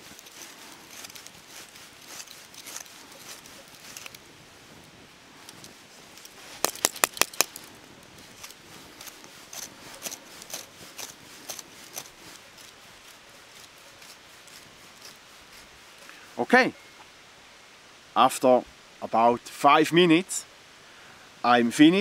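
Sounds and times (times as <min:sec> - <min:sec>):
knife saw blade scraping wood: 0:00.0 - 0:04.2, 0:08.4 - 0:15.2
sharp clicks: 0:06.6 - 0:07.6.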